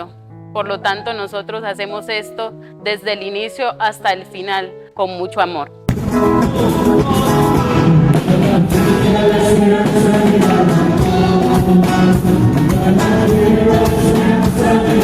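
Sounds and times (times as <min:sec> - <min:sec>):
instrumental accompaniment: 0:05.8 - 0:15.0
group singing a church song: 0:06.4 - 0:15.0.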